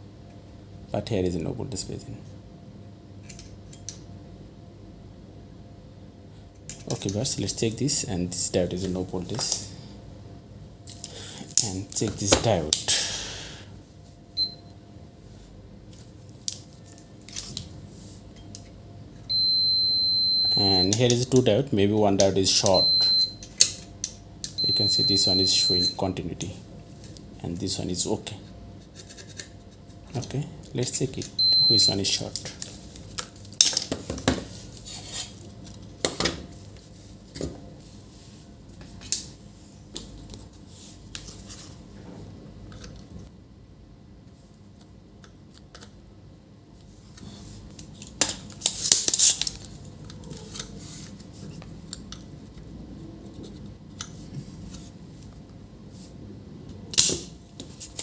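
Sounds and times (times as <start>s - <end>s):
multimeter beep: 14.4s - 14.7s, 19.3s - 21.0s, 22.6s - 23.4s, 24.5s - 26.0s, 31.4s - 32.1s.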